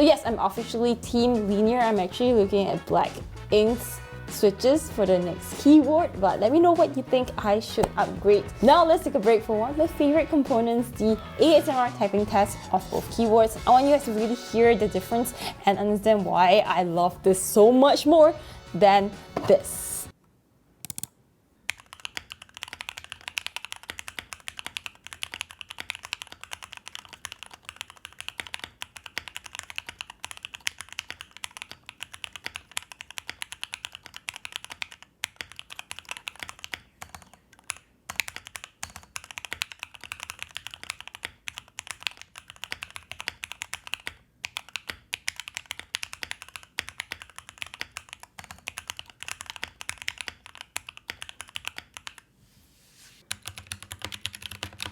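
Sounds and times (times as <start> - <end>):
mechanical keyboard typing: 20.8 - 21.1, 21.7 - 52.3, 53.3 - 54.9.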